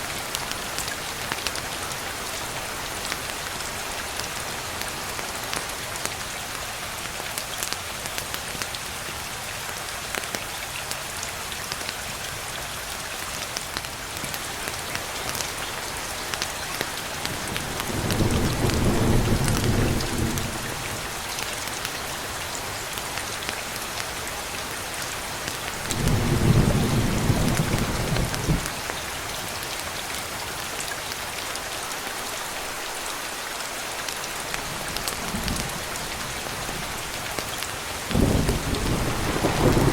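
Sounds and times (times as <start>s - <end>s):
steady rain falling: 0.0s - 39.9s
low rumbles of thunder: 17.4s - 20.8s, 38.1s - 39.9s.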